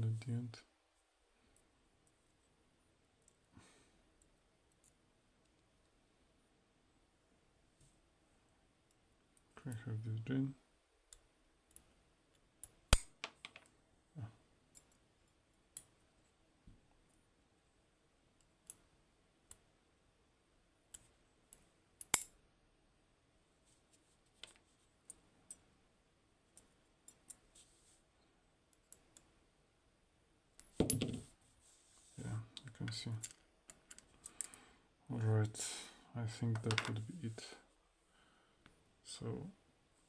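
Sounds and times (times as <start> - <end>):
light clicks of lock parts: 32.6 - 34.6.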